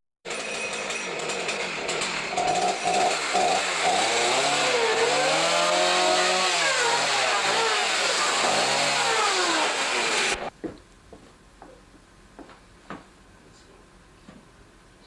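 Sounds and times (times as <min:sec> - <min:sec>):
chainsaw engine revving: 0:00.3 - 0:10.5.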